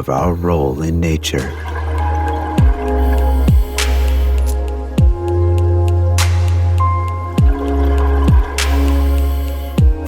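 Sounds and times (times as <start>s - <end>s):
hissing swell: 0.0s - 5.0s, 7.6s - 9.8s
ambient electronic music: 0.0s - 10.0s.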